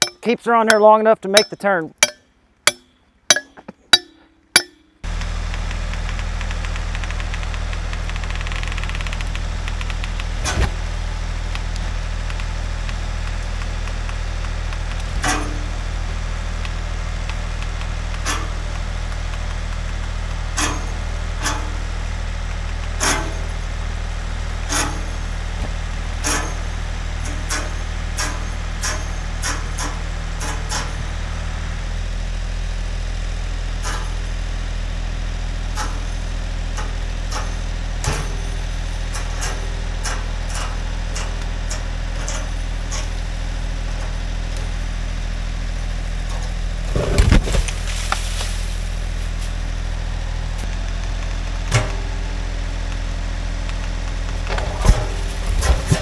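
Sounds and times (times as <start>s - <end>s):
sharp metal clank: 0.0s - 0.8s, 1.4s - 5.0s
sharp metallic clinks: 0.0s - 5.0s
backhoe engine running: 0.0s - 56.0s.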